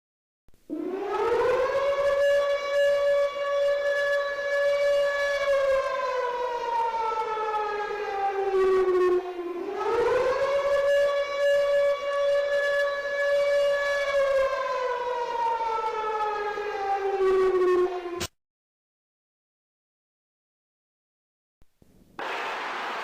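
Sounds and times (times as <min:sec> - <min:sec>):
wailing goal siren: 0:00.7 - 0:18.3.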